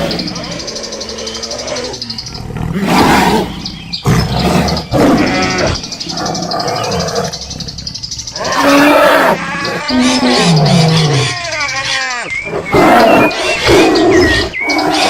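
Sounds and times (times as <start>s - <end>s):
loud animal cries: 4.6s - 7.4s, 8.3s - 15.0s.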